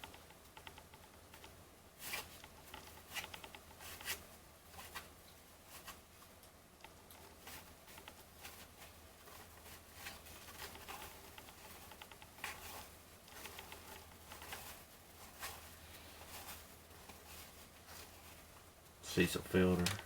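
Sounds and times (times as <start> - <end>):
low electrical hum: 0.0 - 20.0
trading cards flicking and rustling: 19.2 - 20.0.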